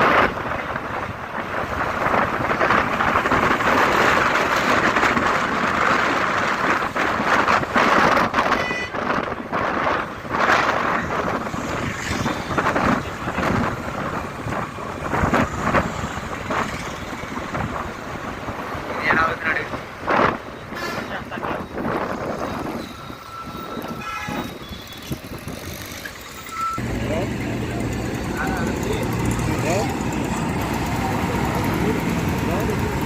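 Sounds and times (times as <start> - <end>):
highway traffic passing: 0.0 - 33.0
car horn toot: 8.5 - 9.0, 23.4 - 25.0, 26.5 - 26.8.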